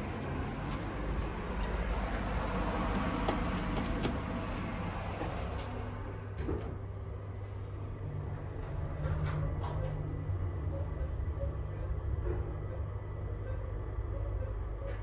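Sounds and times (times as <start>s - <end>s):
elevator rumble and hum: 0.0s - 15.0s
clicks and knocks: 2.9s - 4.4s.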